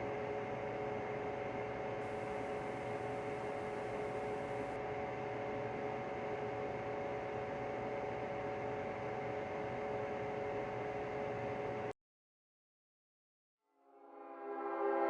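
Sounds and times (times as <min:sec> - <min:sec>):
steady electronic hum: 0:00.0 - 0:11.9.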